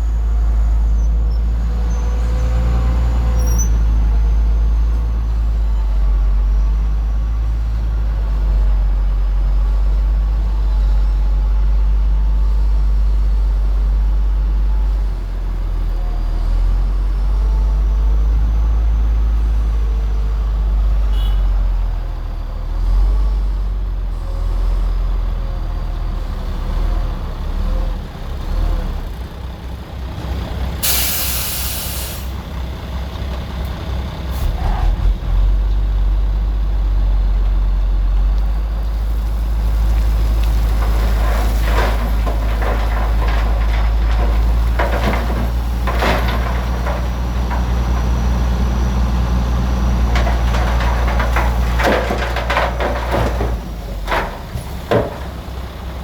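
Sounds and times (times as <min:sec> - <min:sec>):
diesel machinery rumbling: 0:00.0 - 0:56.0
air brake hiss: 0:30.8 - 0:32.4.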